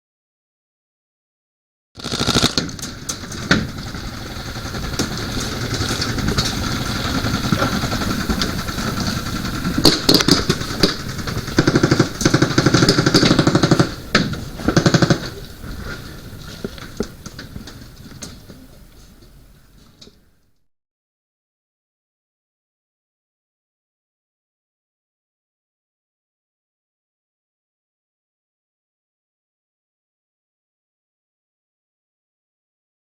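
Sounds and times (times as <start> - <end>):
airsoft guns firing automatic bursts: 2.0 - 15.4.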